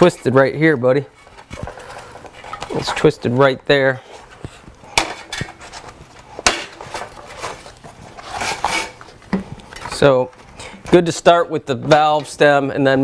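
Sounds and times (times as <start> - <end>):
rubber tube rubbing and scraping: 1.0 - 10.9.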